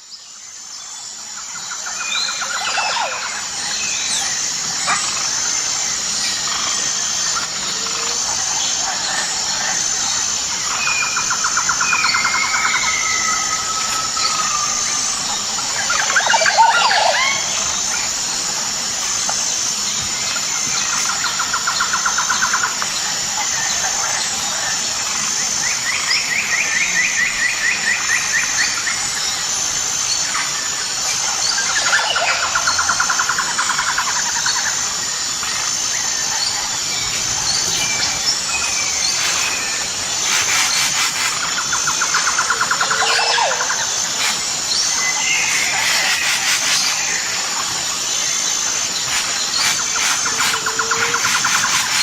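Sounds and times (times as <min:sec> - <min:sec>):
shrill pulsing insect drone: 0:00.0 - 0:52.0
birds calling: 0:35.6 - 0:52.0
rapid bird trills: 0:36.4 - 0:47.3, 0:48.8 - 0:52.0.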